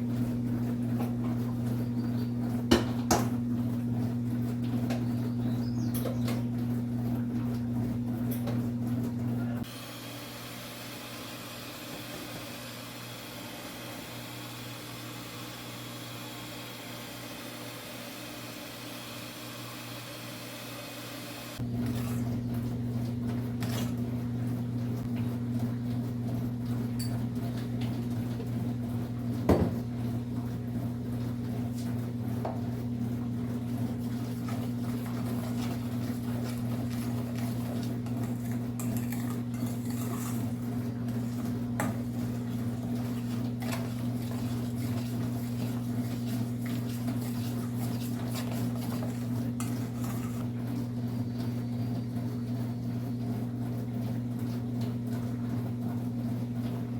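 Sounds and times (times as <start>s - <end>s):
dishes and utensils clinking: 37.4s - 42.1s.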